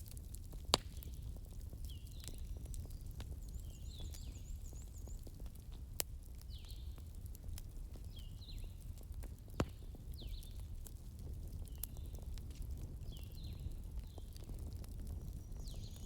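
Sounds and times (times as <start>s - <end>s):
fire crackling: 0.0s - 16.0s
small birds chirping: 0.9s - 7.1s, 7.9s - 8.8s, 9.7s - 10.7s, 11.5s - 12.4s, 13.0s - 16.0s.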